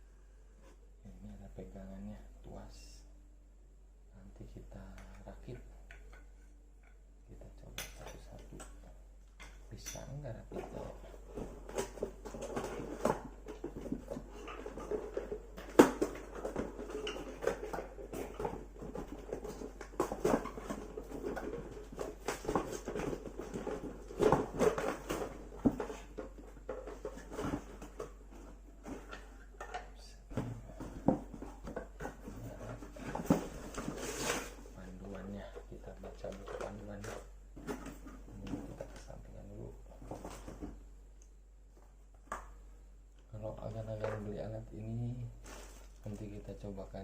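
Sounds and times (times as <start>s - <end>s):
rustling: 9.7s - 40.8s, 43.3s - 47.0s.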